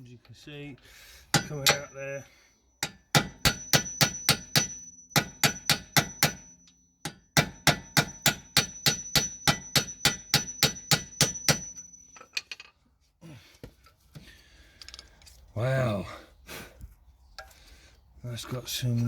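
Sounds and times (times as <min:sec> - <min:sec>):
hammer striking metal punch: 0:01.3 - 0:02.1, 0:02.8 - 0:12.5.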